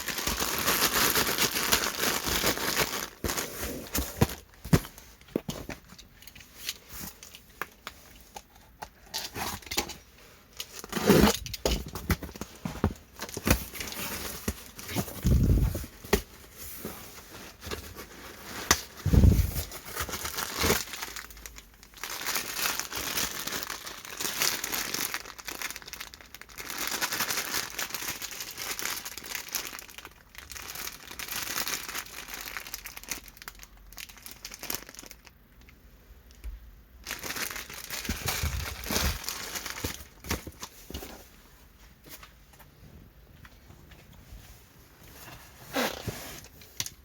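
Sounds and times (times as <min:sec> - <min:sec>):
plastic packaging crinkling: 0:00.0 - 0:35.7, 0:37.0 - 0:41.2.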